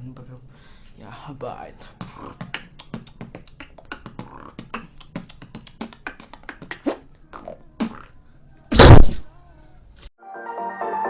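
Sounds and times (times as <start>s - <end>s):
beatboxing clicks and kicks: 2.0s - 8.1s.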